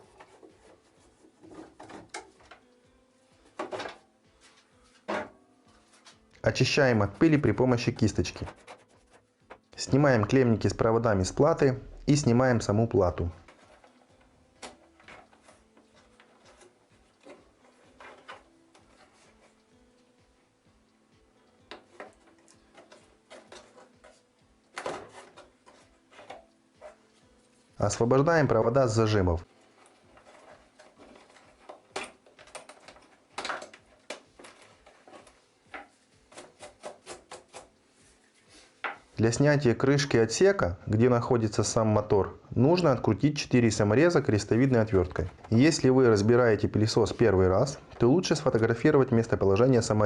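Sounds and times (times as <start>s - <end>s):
plastic and wire clicks and rustles: 0.0s - 5.1s, 13.4s - 19.8s, 21.7s - 27.0s, 29.5s - 37.7s
faint clicks and plastic rattles: 29.7s - 36.5s.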